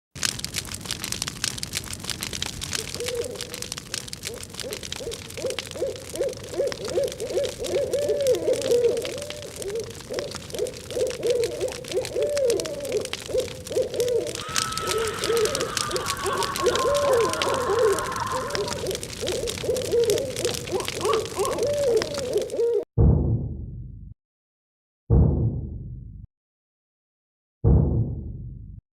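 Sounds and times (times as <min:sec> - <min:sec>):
dense crackle of small clicks: 0:00.1 - 0:22.6
low wavering hooting calls: 0:02.8 - 0:03.7, 0:04.3 - 0:22.8.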